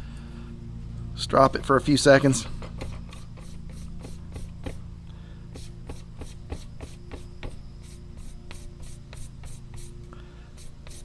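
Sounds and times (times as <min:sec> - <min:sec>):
blade stropping strokes: 0:10.6 - 0:11.0.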